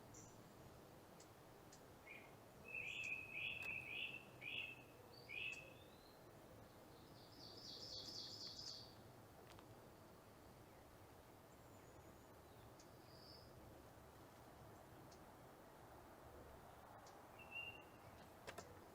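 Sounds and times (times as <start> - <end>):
faint background hiss: 0.0 - 18.9
songbirds chirping: 0.0 - 18.9
bird trill: 2.1 - 6.2, 17.0 - 18.2.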